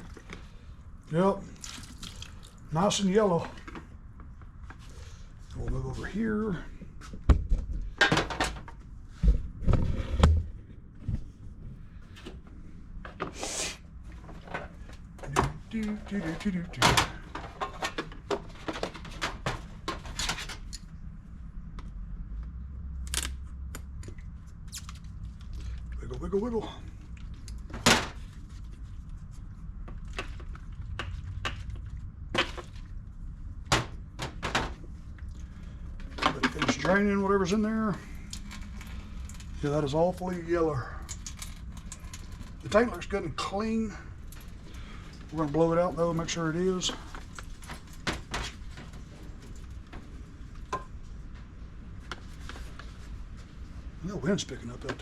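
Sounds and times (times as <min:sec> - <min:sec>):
steady low rumble: 0:20.7 - 0:55.0.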